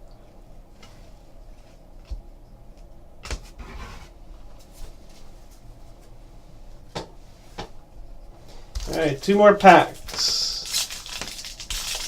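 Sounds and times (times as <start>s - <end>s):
packs rustling: 9.8s - 12.0s.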